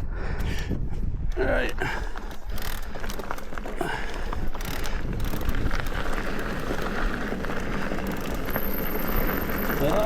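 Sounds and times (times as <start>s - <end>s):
wind on microphone: 0.0s - 2.8s, 4.2s - 6.3s
bike hub ratchet clicking: 2.3s - 10.0s.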